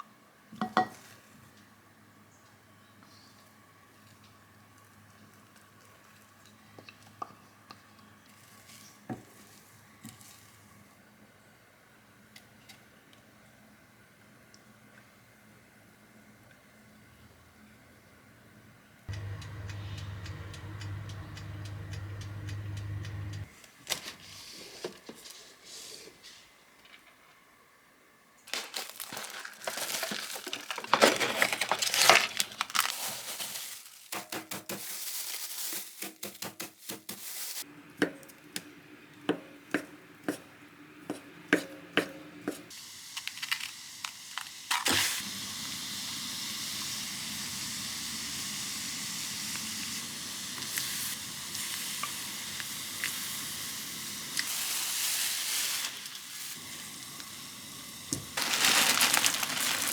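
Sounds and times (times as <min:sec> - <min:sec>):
utensils tapping and clicking: 0:19.1 - 0:23.5
rustling and handling: 0:23.5 - 0:27.3, 0:28.5 - 0:37.6, 0:58.2 - 0:59.9
food sizzling in a hot pan: 0:42.7 - 0:59.9.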